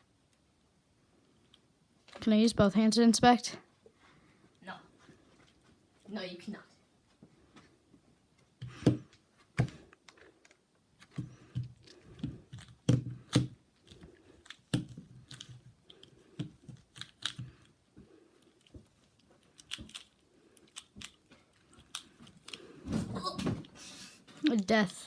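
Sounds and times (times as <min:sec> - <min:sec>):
puzzle cube plastic clicks: 0:11.8 - 0:17.8, 0:18.6 - 0:22.7.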